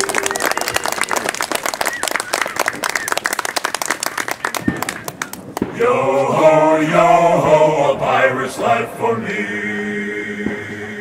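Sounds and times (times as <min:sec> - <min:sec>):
people clapping: 0:00.0 - 0:05.8
group singing in chorus: 0:05.7 - 0:11.0.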